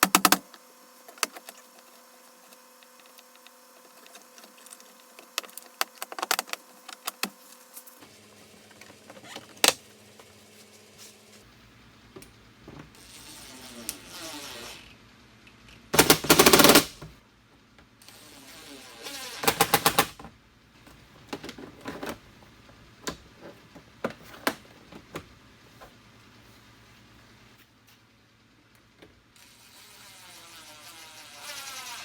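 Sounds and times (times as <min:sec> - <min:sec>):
rapid tool clicking: 0:00.0 - 0:01.9, 0:16.0 - 0:17.0.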